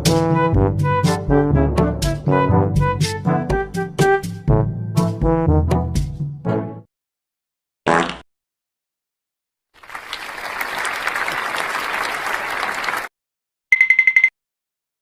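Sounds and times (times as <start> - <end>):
crowd applauding: 9.8 - 13.1.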